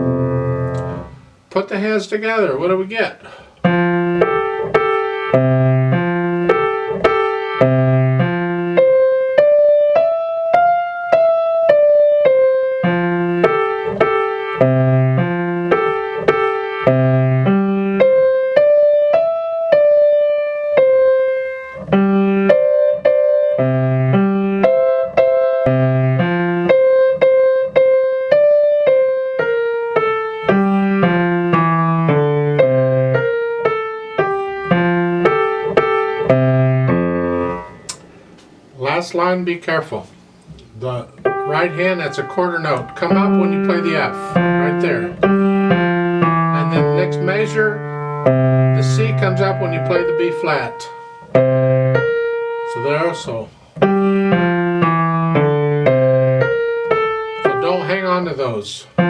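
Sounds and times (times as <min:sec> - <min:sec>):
piano playing simple piece: 0:00.0 - 0:59.0.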